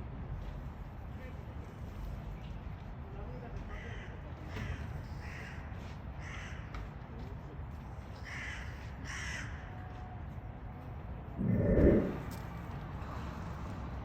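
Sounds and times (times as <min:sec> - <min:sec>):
crows cawing: 0:06.2 - 0:06.7, 0:08.3 - 0:09.7
loud low-pitched burst: 0:11.4 - 0:12.3
steady low rumble: 0:11.4 - 0:12.4.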